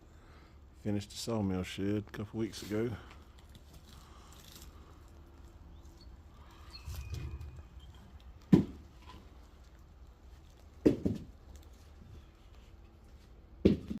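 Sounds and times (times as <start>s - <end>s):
firewood pieces landing: 6.5s - 11.8s.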